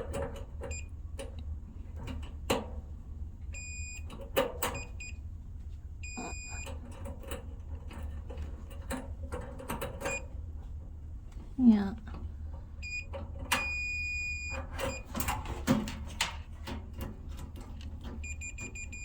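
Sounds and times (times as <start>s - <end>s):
multimeter beeping: 3.6s - 4.1s, 6.0s - 6.7s, 12.8s - 15.0s, 18.2s - 19.0s.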